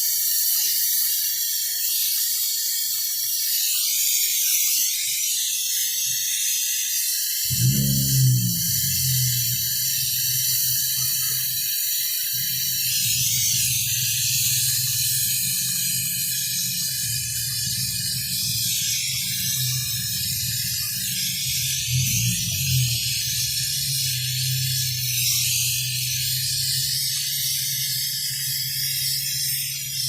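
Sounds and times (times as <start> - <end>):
steady hiss: 7.0 - 30.0
compressor humming: 7.5 - 29.1.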